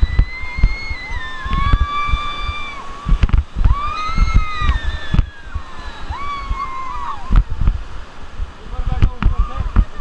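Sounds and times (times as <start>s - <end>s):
people whooping: 0.0s - 7.5s
river water splashing: 0.0s - 10.0s
wind on microphone: 0.0s - 10.0s.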